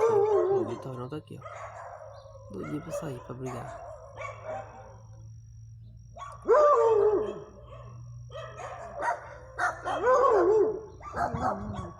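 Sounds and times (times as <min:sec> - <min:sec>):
dogs howling: 0:00.0 - 0:05.0, 0:06.3 - 0:11.9
dogs barking: 0:00.0 - 0:05.1, 0:06.2 - 0:11.9.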